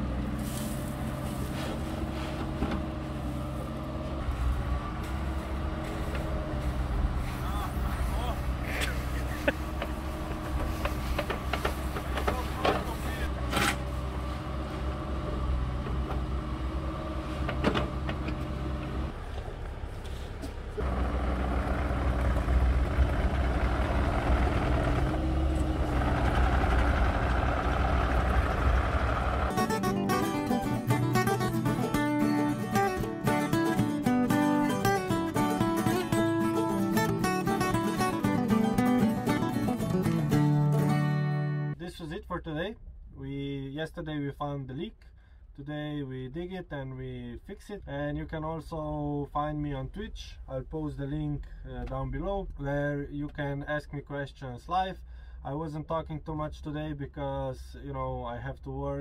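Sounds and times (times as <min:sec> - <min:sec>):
engine running steadily: 0:00.0 - 0:41.8
guitar music: 0:29.5 - 0:41.8.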